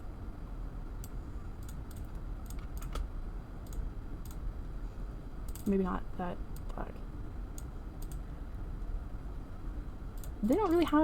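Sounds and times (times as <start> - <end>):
low steady hum: 0.0 - 11.0
computer mouse and keyboard clicks: 1.0 - 4.4.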